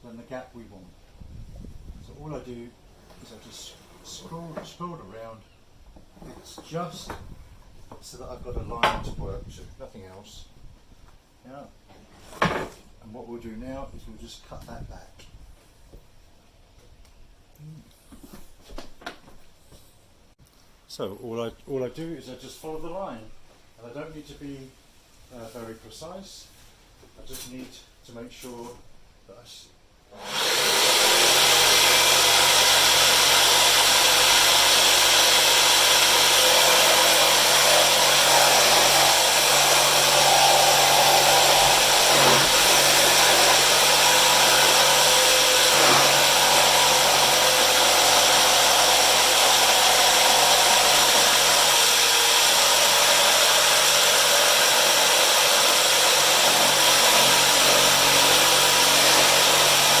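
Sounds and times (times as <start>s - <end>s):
power tool cutting timber: 30.2s - 60.0s.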